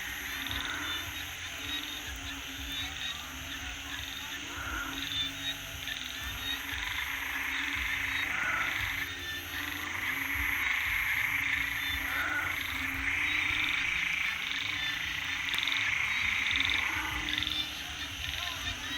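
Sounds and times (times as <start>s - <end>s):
chorus of frogs calling: 0.0s - 18.9s
high-pitched insect trill: 0.0s - 18.9s.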